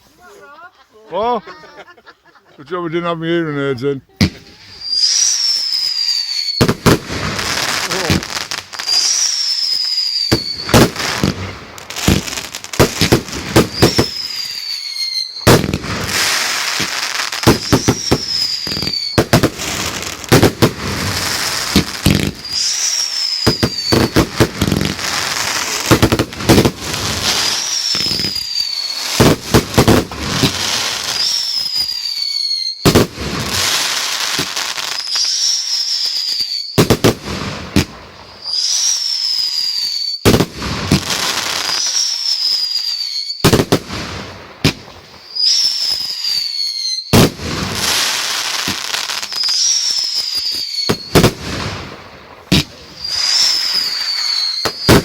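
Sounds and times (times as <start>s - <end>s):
fireworks bangs and crackling: 4.1s - 55.0s
firework whistle falling in pitch: 17.4s - 19.2s, 22.3s - 25.9s, 53.0s - 55.0s.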